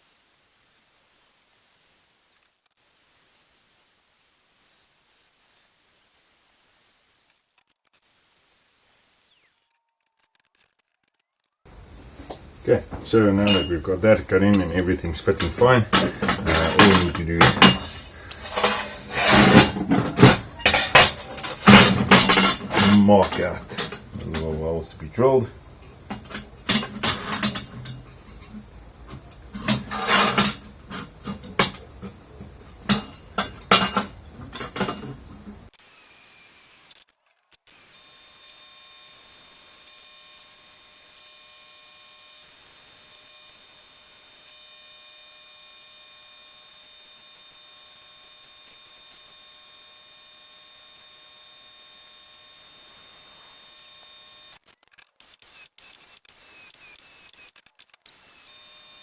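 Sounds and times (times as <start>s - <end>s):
steel parts tapping and clinking: 11.8s - 35.7s.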